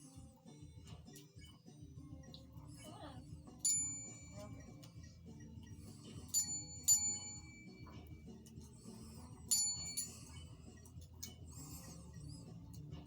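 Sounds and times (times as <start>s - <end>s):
desk service bell dinging: 6.4s - 7.6s.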